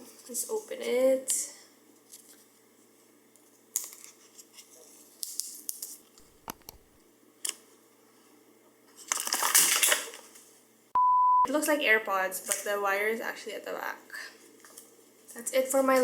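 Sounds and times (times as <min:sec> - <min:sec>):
small clicks and taps: 0:05.2 - 0:07.6
packaging rustling: 0:09.0 - 0:10.5.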